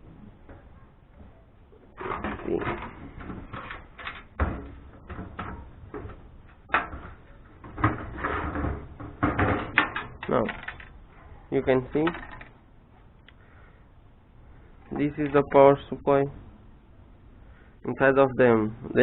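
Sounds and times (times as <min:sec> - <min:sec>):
metal parts knocking and scraping: 0:00.4 - 0:12.7, 0:14.8 - 0:15.6.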